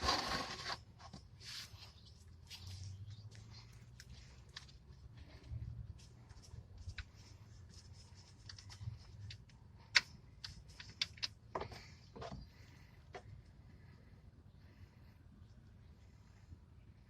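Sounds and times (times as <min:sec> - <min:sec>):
light clicks and taps of tools: 0:03.3 - 0:07.3.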